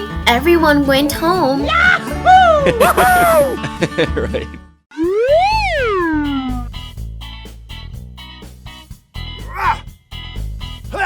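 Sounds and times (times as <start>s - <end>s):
plucked notes in bouncy rhythm: 0.0s - 6.8s
voice-like cry: 9.5s - 9.8s.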